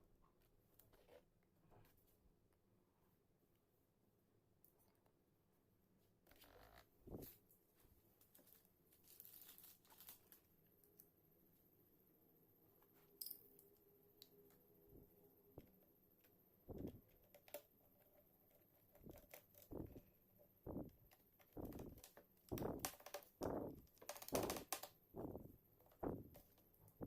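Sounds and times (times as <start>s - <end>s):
small clicks and rustles: 6.2s - 11.1s, 15.6s - 27.0s.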